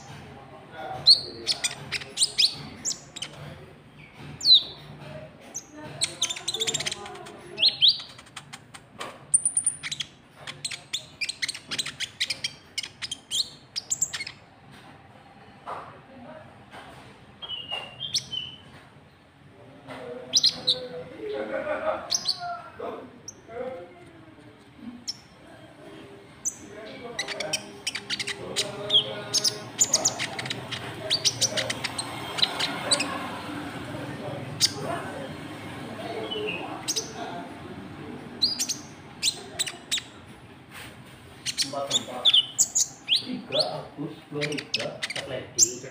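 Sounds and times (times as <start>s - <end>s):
bird chirping: 0.8s - 14.5s, 17.4s - 18.8s, 20.3s - 20.9s, 22.1s - 22.6s, 26.4s - 37.4s, 38.2s - 40.3s, 41.4s - 45.9s.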